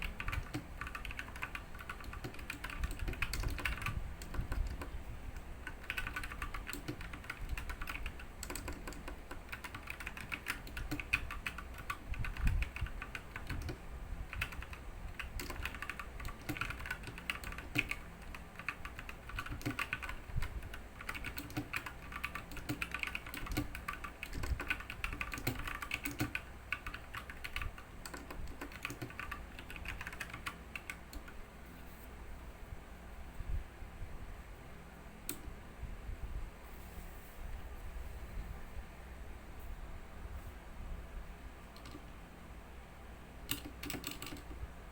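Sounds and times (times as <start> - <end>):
fast mechanical keyboard typing: 0.0 - 31.4, 41.8 - 42.1, 43.4 - 44.9.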